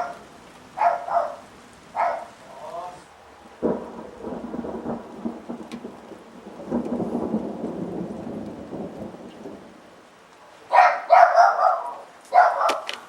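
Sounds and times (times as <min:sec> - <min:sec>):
rain falling: 0:00.0 - 0:13.0
thunder clap and rumble: 0:01.5 - 0:10.0.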